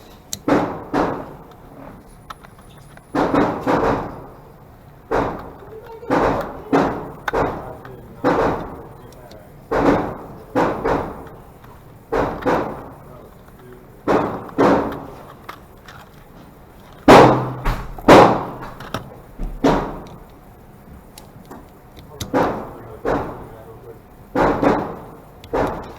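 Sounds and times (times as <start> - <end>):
pistol shots echoing: 9.7 - 11.4.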